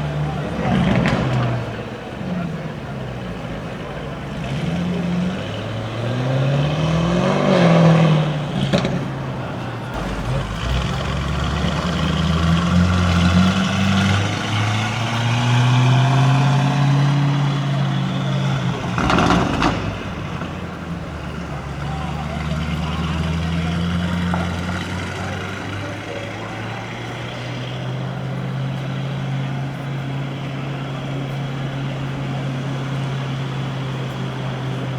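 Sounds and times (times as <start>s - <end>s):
car engine revving: 0.1s - 34.9s
sharp exhaust crackles: 7.9s - 34.9s.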